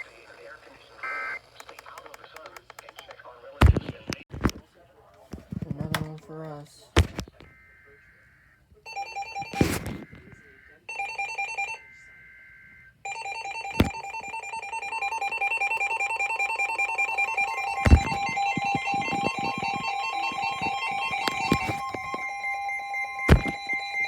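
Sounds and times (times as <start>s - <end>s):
pulsing multi-tone beeping alarm: 7.5s - 24.0s
electronic alert tone: 13.1s - 24.0s.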